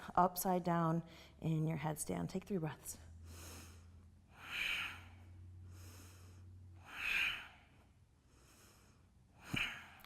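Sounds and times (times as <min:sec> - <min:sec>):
person breathing deeply: 0:03.2 - 0:10.0.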